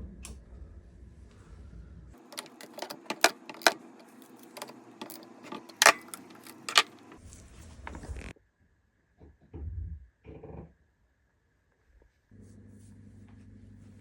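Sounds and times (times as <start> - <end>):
metal tools clinking: 2.2 - 7.2.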